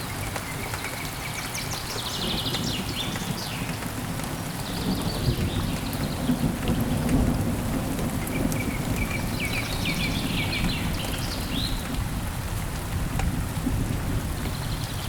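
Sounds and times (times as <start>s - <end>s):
heavy rain: 0.0s - 15.0s
thunder rumbling: 2.0s - 15.0s.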